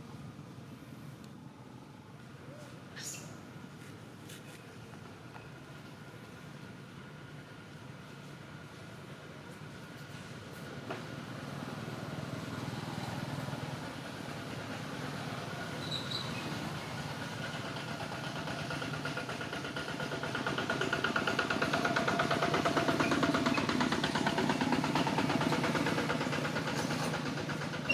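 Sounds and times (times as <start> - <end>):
vehicle engine running: 11.2 - 27.9.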